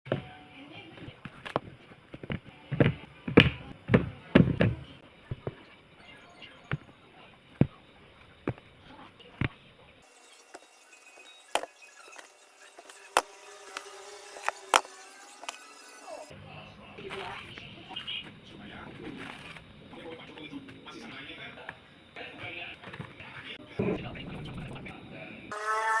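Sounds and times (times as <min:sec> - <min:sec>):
heavy thumps: 0:01.0 - 0:05.6, 0:08.4 - 0:08.7.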